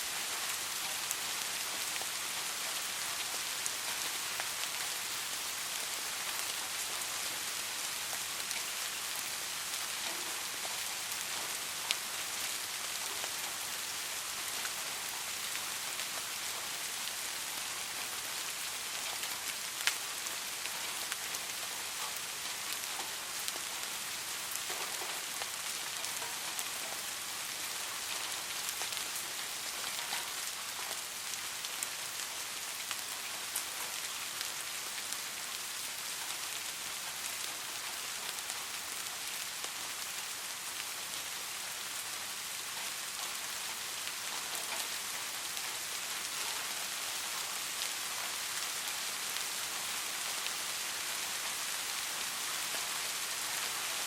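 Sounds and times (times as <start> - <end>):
raindrops hitting: 0.0 - 17.0, 17.9 - 40.8
steady rain hissing: 0.0 - 54.0.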